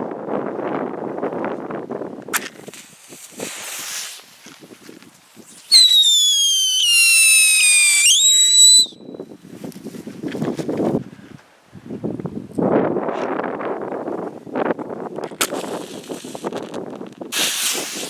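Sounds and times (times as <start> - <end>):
wind noise on microphone: 0.0 - 18.0
whistling firework: 5.4 - 9.3, 17.3 - 18.0.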